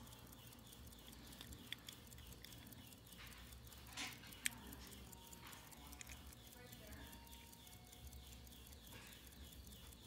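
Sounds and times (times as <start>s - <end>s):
faint clicks: 0.0s - 10.0s
sharp click: 0.0s - 10.0s.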